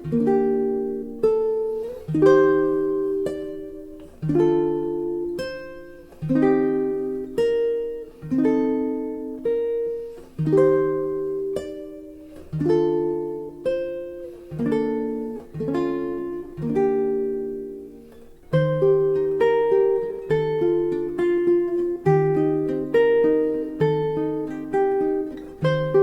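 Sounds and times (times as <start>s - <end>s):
guitar picked chords: 0.0s - 26.0s.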